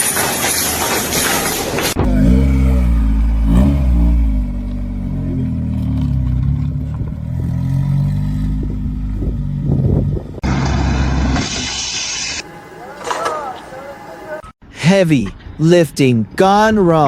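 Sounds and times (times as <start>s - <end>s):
engine running and revving: 1.4s - 11.4s.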